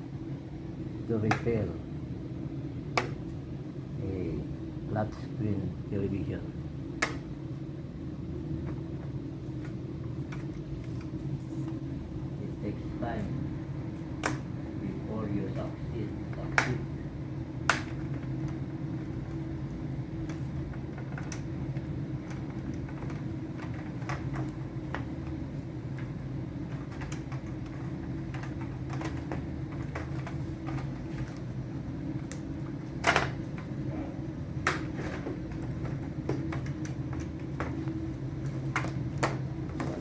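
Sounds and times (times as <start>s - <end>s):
steady low hum: 0.0s - 40.0s.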